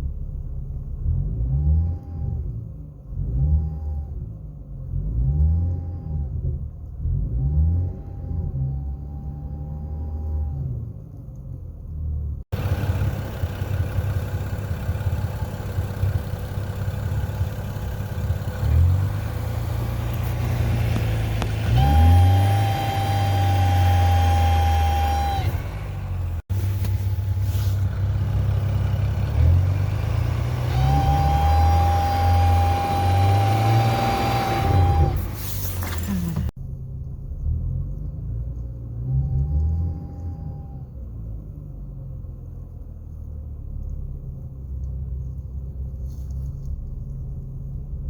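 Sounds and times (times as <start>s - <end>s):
car engine pulling under load: 6.9s - 36.6s.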